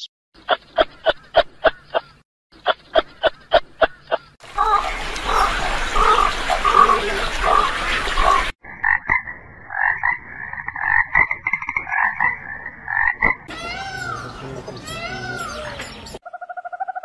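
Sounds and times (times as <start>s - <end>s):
frogs croaking: 4.6s - 13.5s, 16.2s - 17.0s.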